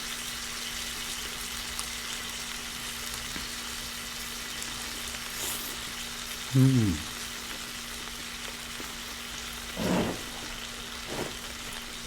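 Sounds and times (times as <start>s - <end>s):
steady hiss: 9.7s - 12.0s.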